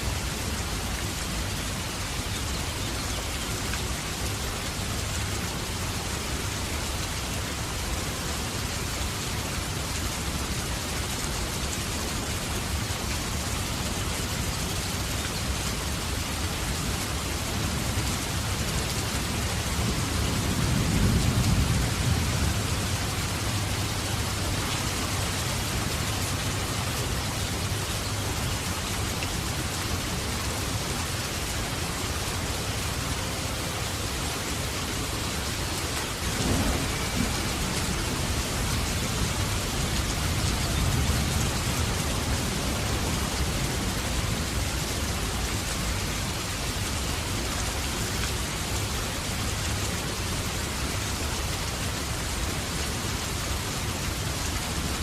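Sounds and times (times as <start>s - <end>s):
heavy rain: 0.0s - 55.0s
thunder rumble: 36.1s - 44.4s
thunder crack: 36.3s - 39.2s.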